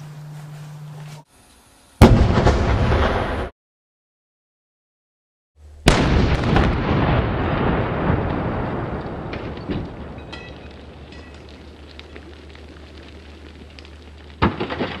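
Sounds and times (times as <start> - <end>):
explosion rumble: 2.0 - 3.5, 5.8 - 15.0
debris crackling and clicking: 8.2 - 15.0.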